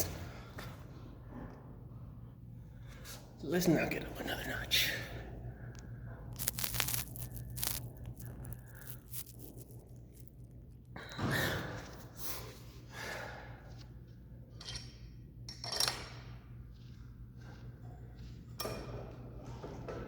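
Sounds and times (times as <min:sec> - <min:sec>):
steady low hum: 0:00.2 - 0:15.4.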